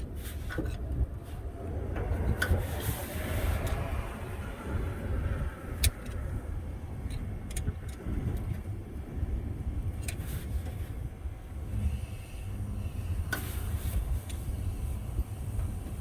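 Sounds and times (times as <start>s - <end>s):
low rumble: 0.9s - 10.0s.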